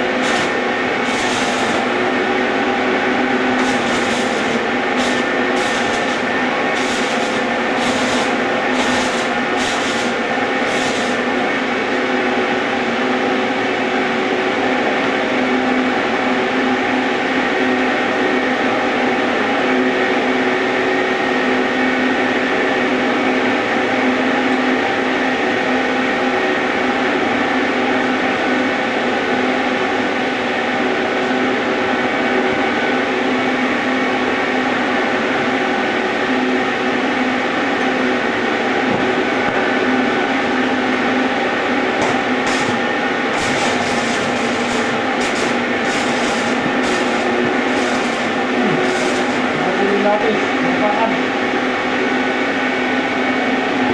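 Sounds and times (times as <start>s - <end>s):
sharp crackling: 0.0s - 2.4s, 3.6s - 12.0s, 42.0s - 50.1s
arc welding hum and hiss: 0.0s - 12.6s, 40.4s - 50.8s.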